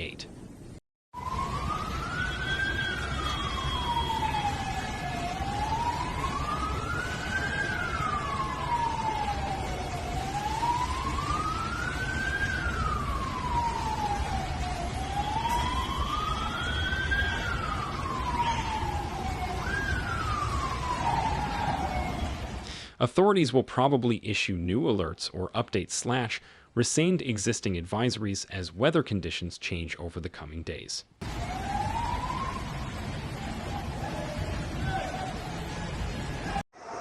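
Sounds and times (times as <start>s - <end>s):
emergency vehicle siren wailing: 1.2s - 22.7s, 31.2s - 37.0s.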